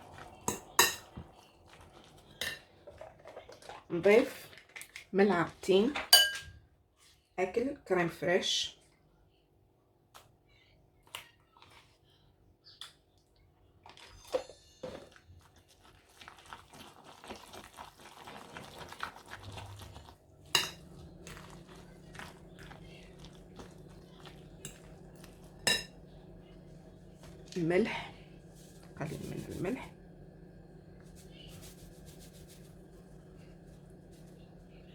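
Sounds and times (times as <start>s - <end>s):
faint steady hum: 20.2s - 34.9s.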